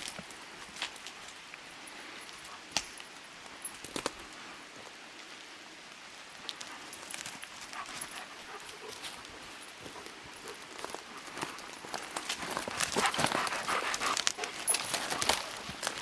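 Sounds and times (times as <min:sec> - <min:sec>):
steady hiss: 0:00.0 - 0:16.0
footsteps on forest floor: 0:06.6 - 0:16.0
twigs snapping: 0:10.6 - 0:16.0.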